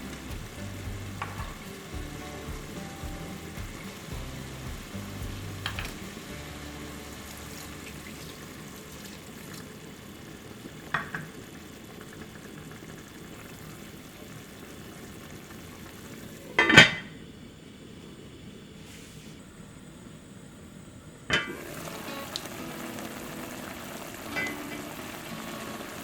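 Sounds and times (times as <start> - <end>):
utensil tap: 0.0 - 6.2
food sizzling in a pan: 0.0 - 16.6, 21.5 - 26.0
cookware clatter: 5.6 - 6.0.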